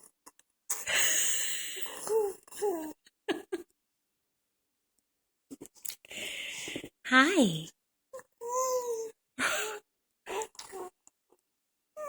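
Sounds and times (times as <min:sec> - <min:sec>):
baby babbling and cooing: 0:02.1 - 0:02.9, 0:08.2 - 0:09.1, 0:10.3 - 0:11.0.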